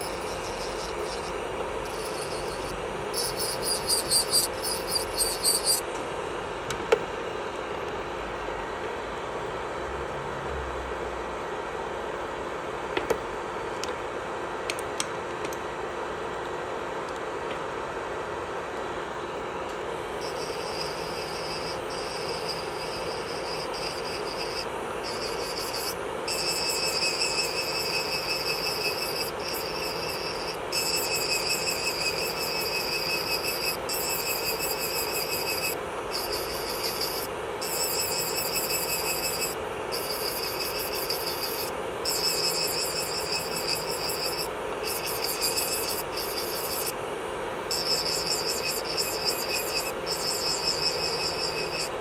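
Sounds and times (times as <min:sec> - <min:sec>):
electric nail drill buzzing: 0:00.0 - 0:05.9, 0:20.0 - 0:47.0, 0:47.7 - 0:52.0.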